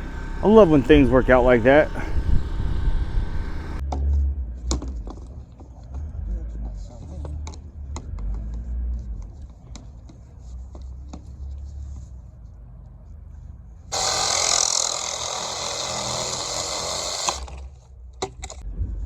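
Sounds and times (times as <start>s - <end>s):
power tool running: 0.0s - 3.8s, 13.9s - 17.7s
low engine rumble: 0.0s - 9.8s, 18.6s - 19.0s.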